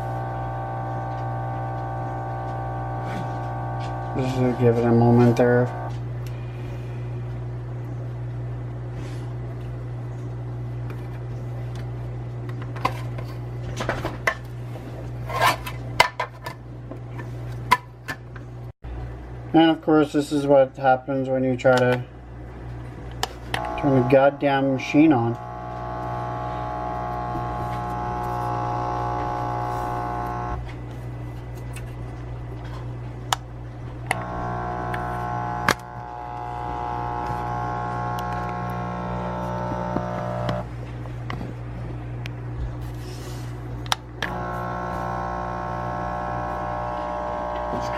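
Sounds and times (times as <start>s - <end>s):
coffee grinder humming: 0.0s - 7.0s, 23.3s - 30.7s, 33.9s - 40.8s, 42.9s - 47.9s.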